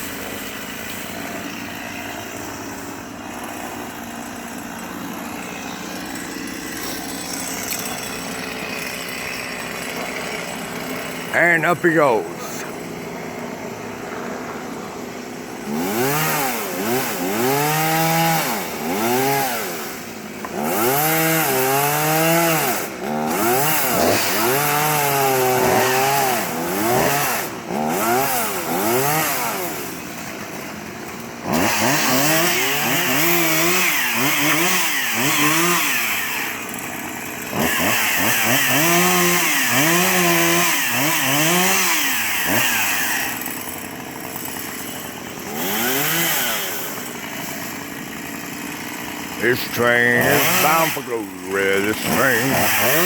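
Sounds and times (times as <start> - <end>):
chainsaw cutting through wood: 0.0 - 53.0
chainsaw revving: 0.0 - 53.0.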